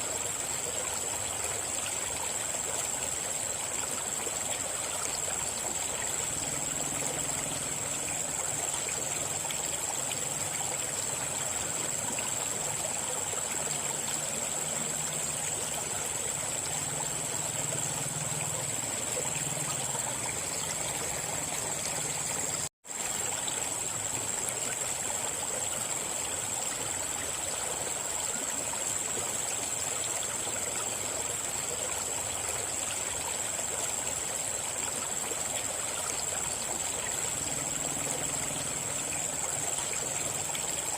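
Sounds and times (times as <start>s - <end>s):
river water rushing: 12.0s - 24.2s.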